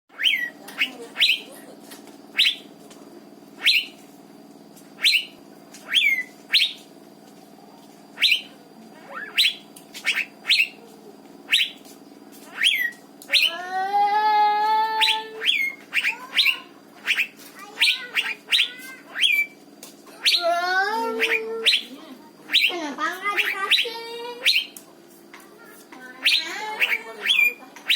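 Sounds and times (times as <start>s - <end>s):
bird whistling falling notes: 5.0s - 5.3s, 8.2s - 8.5s, 15.0s - 19.6s, 21.2s - 21.9s, 22.5s - 22.8s.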